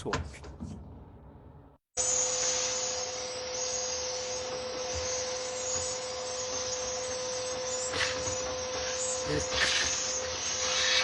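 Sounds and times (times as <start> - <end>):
vacuum cleaner running: 2.0 - 11.0.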